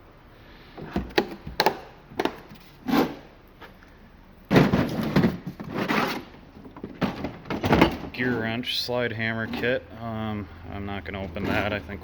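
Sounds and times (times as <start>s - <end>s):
plastic cases knocking and clicking: 0.8s - 2.6s, 6.6s - 8.2s
plastic cases rattling and sliding: 4.5s - 8.5s, 11.2s - 11.9s.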